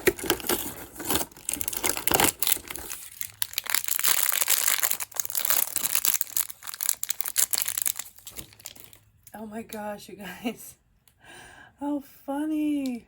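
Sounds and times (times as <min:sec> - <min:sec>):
plastic packaging crinkling: 0:00.0 - 0:09.1.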